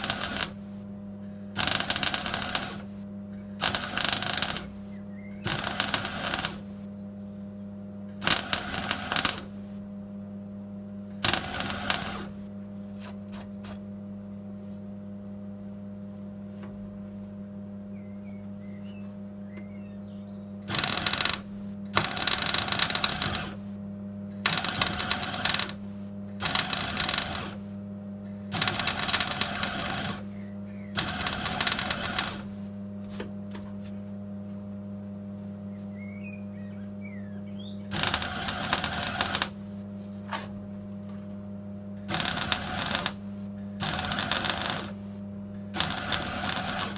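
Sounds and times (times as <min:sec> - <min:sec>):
welding arc crackling: 0:00.0 - 0:00.8, 0:01.6 - 0:03.0, 0:03.6 - 0:06.8, 0:08.2 - 0:09.8, 0:11.2 - 0:12.5, 0:20.7 - 0:23.7, 0:24.4 - 0:27.7, 0:28.6 - 0:32.8, 0:37.9 - 0:39.8, 0:42.1 - 0:46.9
steady low hum: 0:00.0 - 0:46.9.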